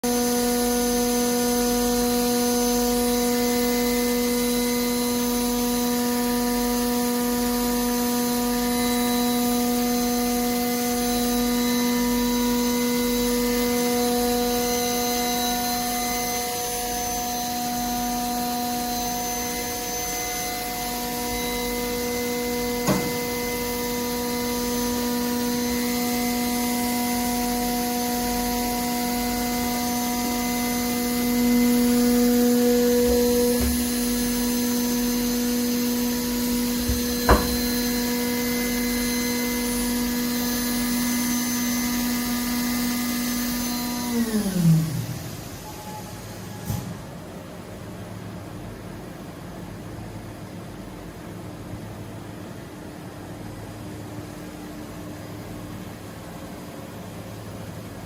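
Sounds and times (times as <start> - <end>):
machining center humming: 0.1 - 42.6
short knock: 36.9 - 37.8.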